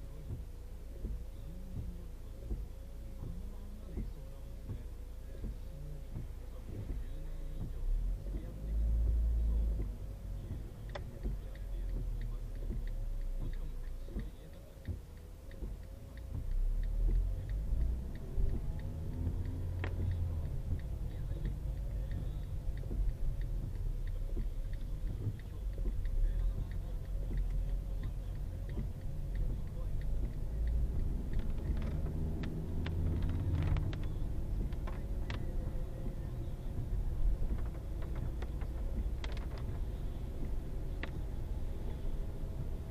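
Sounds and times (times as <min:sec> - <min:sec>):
faint repeating pattern: 0:00.0 - 0:42.9
road and engine rumble: 0:00.0 - 0:42.9
sharp clicks: 0:10.6 - 0:42.9.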